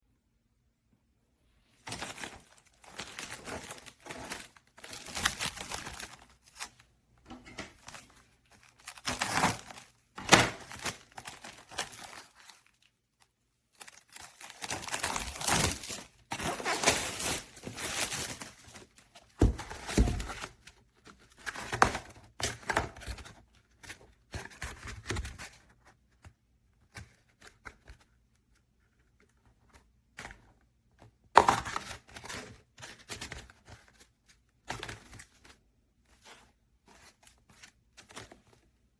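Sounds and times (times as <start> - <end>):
packaging crinkling and tearing: 1.9 - 6.8, 7.7 - 23.3.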